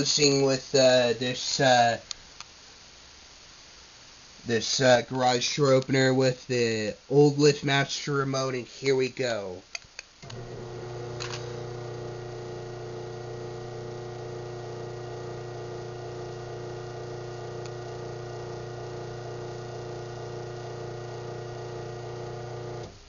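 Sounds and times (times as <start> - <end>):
garage door opener motor hum: 10.2 - 23.0.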